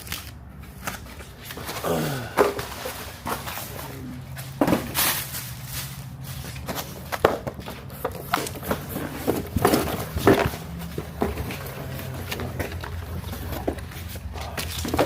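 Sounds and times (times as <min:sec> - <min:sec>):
knocks and rustles of paper: 0:00.0 - 0:15.0.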